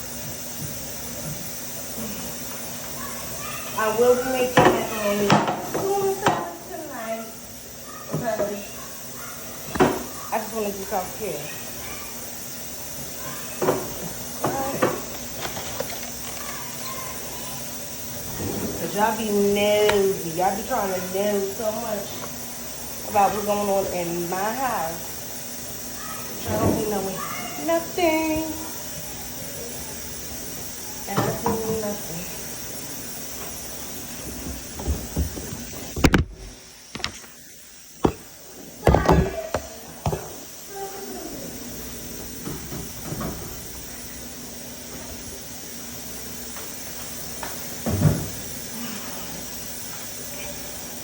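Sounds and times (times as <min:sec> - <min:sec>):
household items knocking and clattering: 0:38.8 - 0:40.3.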